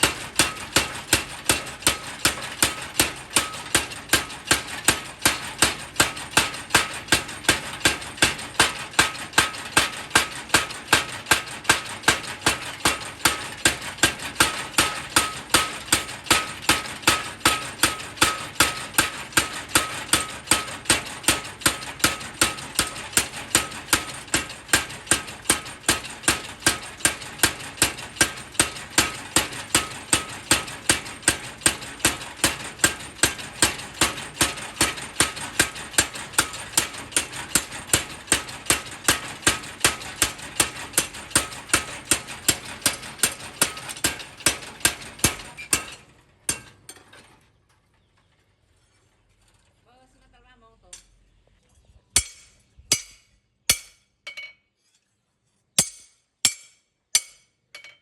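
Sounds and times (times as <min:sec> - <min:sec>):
power hammer blows with metallic ring: 0:00.0 - 0:46.7, 0:52.2 - 0:54.1, 0:55.8 - 0:58.0.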